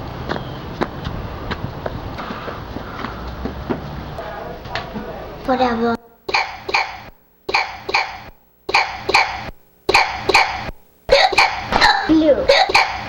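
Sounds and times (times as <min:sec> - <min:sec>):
girl hiccuping: 0:06.3 - 0:13.0.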